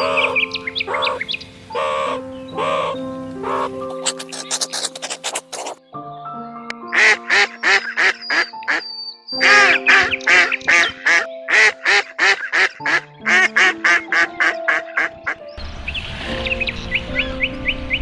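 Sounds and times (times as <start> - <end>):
outdoor hiss: 0.0 - 5.4
ducks quacking: 0.0 - 5.8, 6.9 - 8.8, 9.4 - 15.4
background music with held tones: 0.0 - 18.0.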